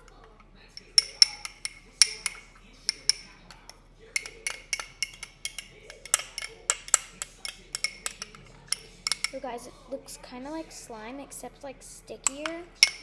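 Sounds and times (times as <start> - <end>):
spoon clinking against a bowl: 0.0 - 9.5, 12.2 - 13.0.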